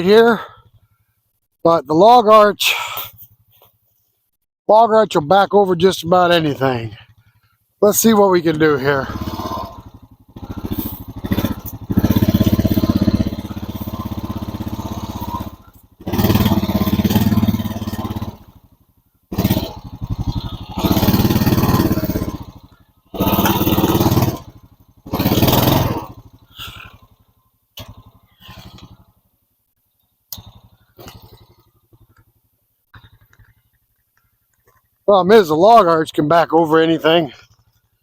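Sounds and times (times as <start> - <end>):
atv engine revving hard: 6.6 - 29.3, 30.3 - 33.6.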